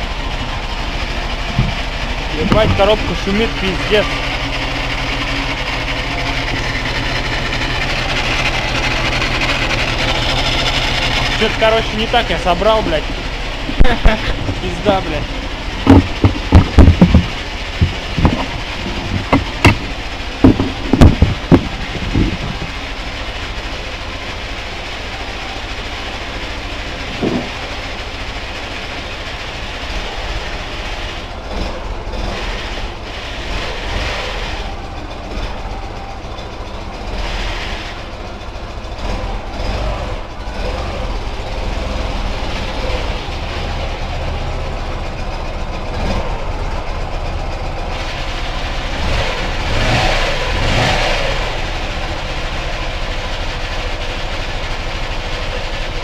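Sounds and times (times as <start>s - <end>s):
motorcycle engine running: 0.0s - 56.0s
noisy gearbox: 0.0s - 56.0s.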